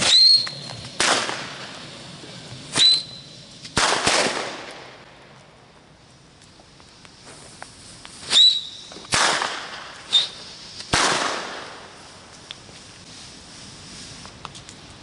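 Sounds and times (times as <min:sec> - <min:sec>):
high firework whistle: 0:00.0 - 0:01.7, 0:02.7 - 0:04.6, 0:08.2 - 0:11.9
distant firework pops: 0:00.0 - 0:01.8, 0:03.6 - 0:05.0, 0:06.4 - 0:12.6
firework bangs: 0:00.0 - 0:05.5, 0:06.9 - 0:12.6.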